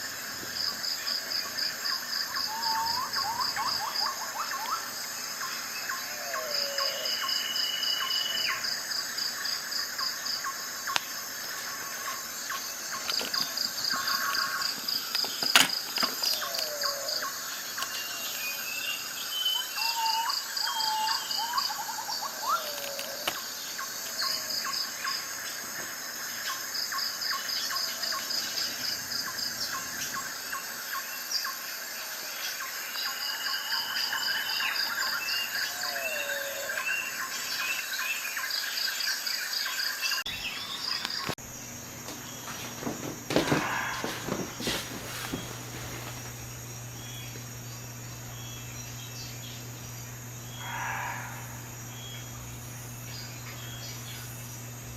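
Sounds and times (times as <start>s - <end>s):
insects chirping in trills: 0.0s - 54.9s.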